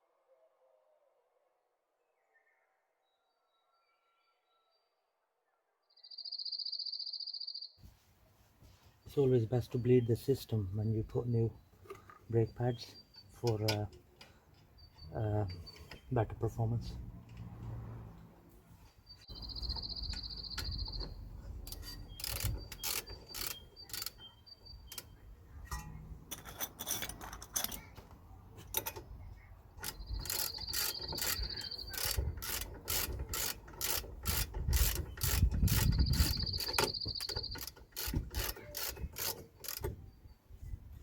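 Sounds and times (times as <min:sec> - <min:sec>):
ratchet wrench clicking: 0:19.6 - 0:24.3, 0:24.9 - 0:27.9, 0:29.8 - 0:40.0
ratchet spinning buzz: 0:21.6 - 0:24.2, 0:29.8 - 0:39.9.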